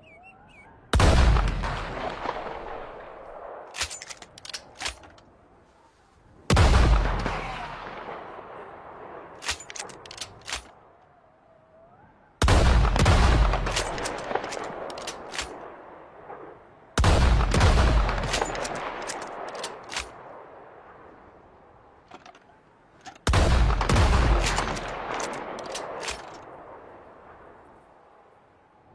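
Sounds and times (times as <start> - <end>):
shotgun blasts with echo: 0.9 - 4.0, 6.5 - 10.0, 12.4 - 20.4, 23.2 - 27.4.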